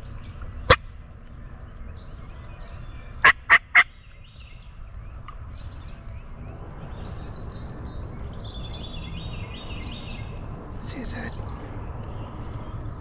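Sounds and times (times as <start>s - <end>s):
songbird chirps: 0.0s - 13.0s
turkey clucks: 3.2s - 3.9s.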